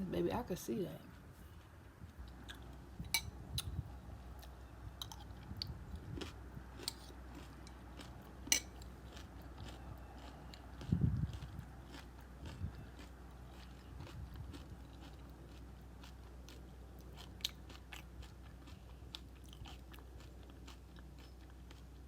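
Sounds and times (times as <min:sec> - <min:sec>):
chewing crunchy cereal: 0:04.4 - 0:22.0.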